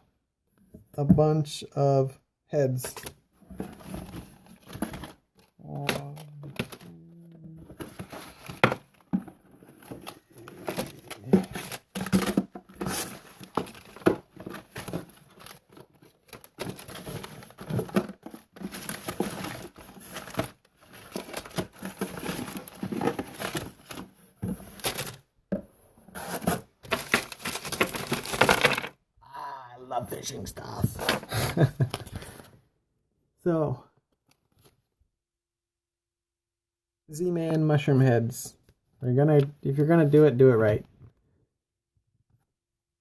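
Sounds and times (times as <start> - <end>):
packaging crinkling and rustling: 3.6 - 25.2, 26.2 - 28.9
packs clicking and crackling: 9.9 - 25.2, 26.2 - 28.9.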